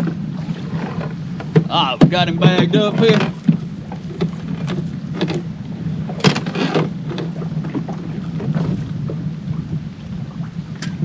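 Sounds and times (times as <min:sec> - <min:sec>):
wind buffeting microphone: 0:00.0 - 0:11.0
knocks: 0:00.9 - 0:05.4.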